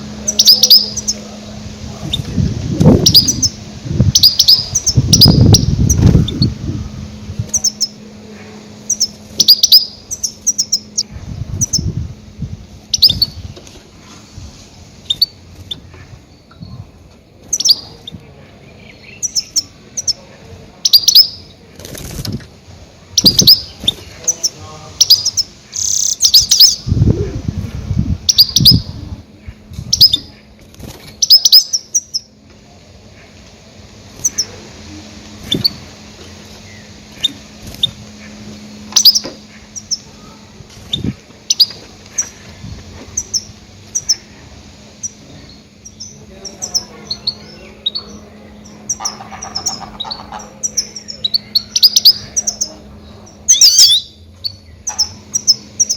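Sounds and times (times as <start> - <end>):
faint low hum: 0.0 - 55.9
goldfinch chirps: 0.2 - 1.3, 3.0 - 6.6, 7.5 - 8.0, 8.8 - 11.9, 12.9 - 13.4, 17.5 - 20.2, 20.8 - 21.5, 23.1 - 26.9, 28.3 - 28.9, 29.9 - 30.4, 31.1 - 32.3, 36.4 - 40.1, 40.9 - 42.5, 45.0 - 55.9.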